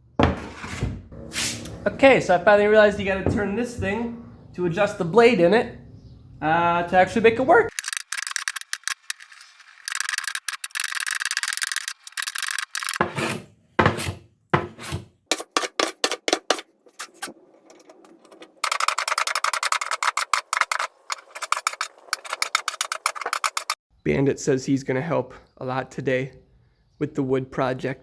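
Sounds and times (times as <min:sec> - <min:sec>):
blade scraping wood: 0:00.3 - 0:01.8, 0:07.7 - 0:23.8.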